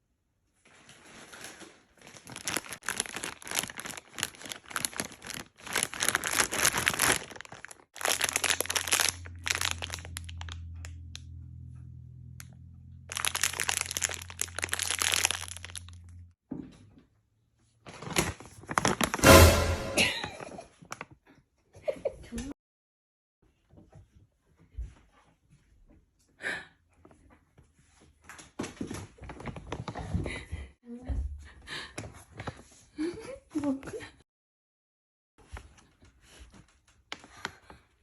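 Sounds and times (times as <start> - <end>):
plastic packaging crinkling: 0.7 - 11.2, 13.1 - 16.2, 17.9 - 19.7.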